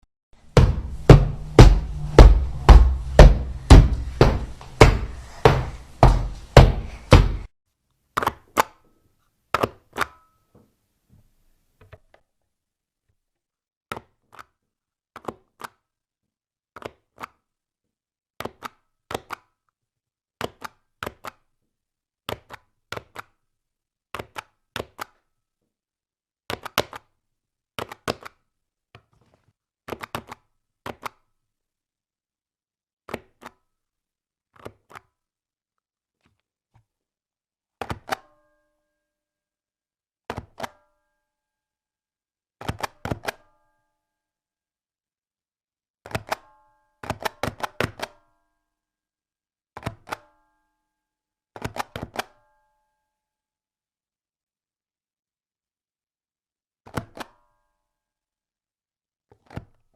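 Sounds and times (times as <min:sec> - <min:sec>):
rubber stamp hits: 0:00.4 - 0:07.5
deep boom: 0:00.5 - 0:05.1.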